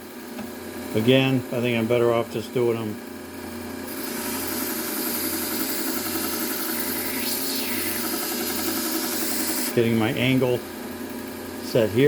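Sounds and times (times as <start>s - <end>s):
belt sander motor hum: 3.9s - 11.3s.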